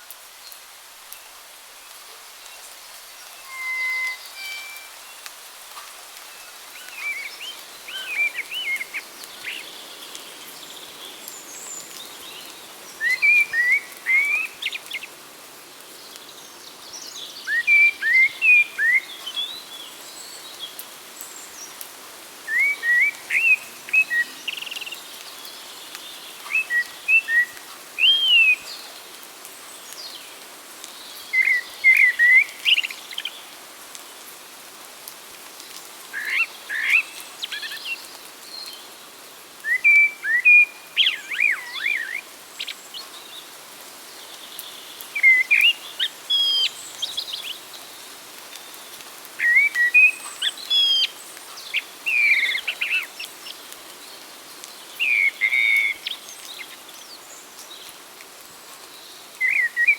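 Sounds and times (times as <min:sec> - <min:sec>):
steady hiss: 0:00.0 - 0:59.9
fainter bird calls: 0:03.2 - 0:05.0, 0:36.1 - 0:38.1, 0:39.7 - 0:43.2, 0:49.4 - 0:53.6, 0:55.0 - 0:57.1.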